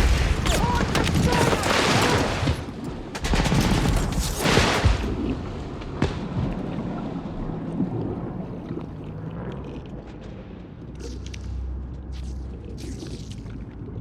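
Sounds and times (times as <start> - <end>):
rapid gunfire: 0.0 - 6.4
explosion blasts: 0.0 - 7.2.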